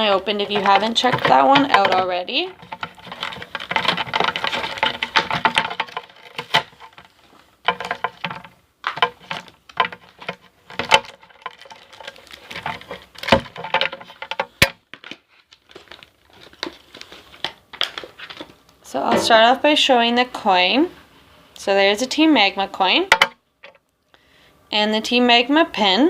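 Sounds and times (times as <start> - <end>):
plastic packaging crinkling: 0.0 - 18.8.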